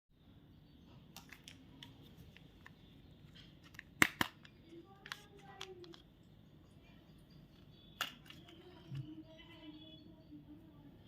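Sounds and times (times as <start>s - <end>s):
candy wrapper crackling: 1.2s - 6.1s.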